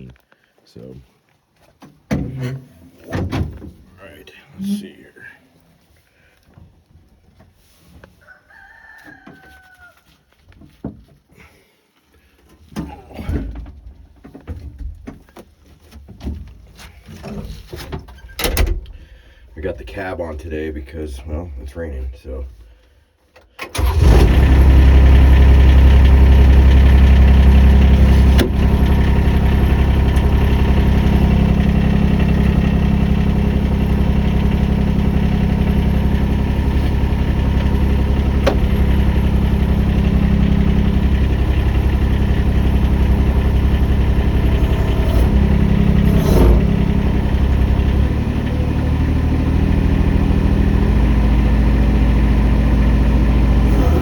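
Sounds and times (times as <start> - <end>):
excavator engine starting and running: 16.4 - 21.6, 23.4 - 54.0.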